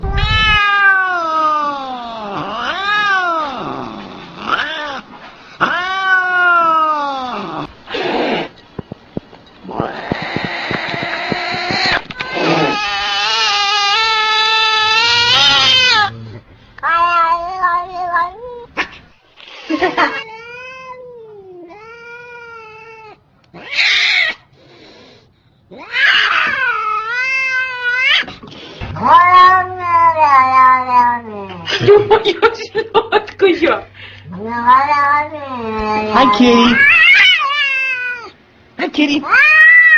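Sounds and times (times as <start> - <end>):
angry cat yowling: 0.0 - 7.7, 9.7 - 18.8, 20.6 - 24.4, 25.7 - 28.3, 29.0 - 31.6, 34.3 - 38.4
cat hissing: 2.2 - 8.6, 9.6 - 20.2, 23.6 - 30.5.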